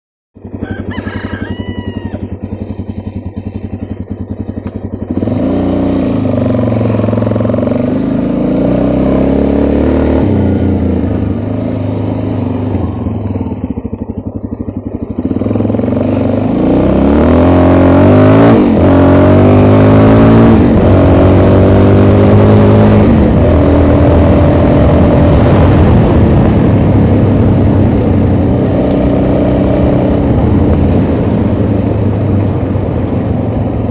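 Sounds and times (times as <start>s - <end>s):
motorcycle engine accelerating: 0.4s - 33.9s.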